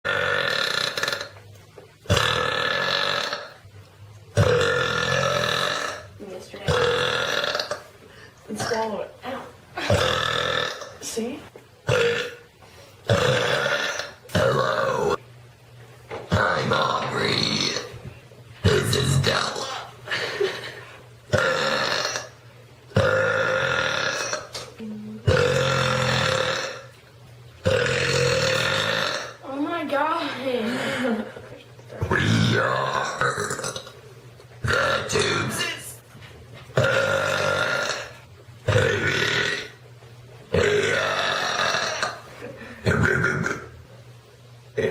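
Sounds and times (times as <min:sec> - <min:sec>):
girl belching: 0:00.1 - 0:01.4, 0:02.1 - 0:03.6, 0:04.4 - 0:07.9, 0:09.8 - 0:11.1, 0:11.9 - 0:12.4, 0:13.1 - 0:15.2, 0:16.3 - 0:18.0, 0:21.3 - 0:22.4, 0:23.0 - 0:26.9, 0:27.6 - 0:29.6, 0:32.0 - 0:34.0, 0:34.6 - 0:35.7, 0:36.8 - 0:39.8, 0:40.5 - 0:42.2, 0:42.8 - 0:43.7
girl burping: 0:06.7 - 0:07.8, 0:09.8 - 0:11.0, 0:21.3 - 0:22.4, 0:36.8 - 0:39.8, 0:40.5 - 0:42.2, 0:42.8 - 0:43.7.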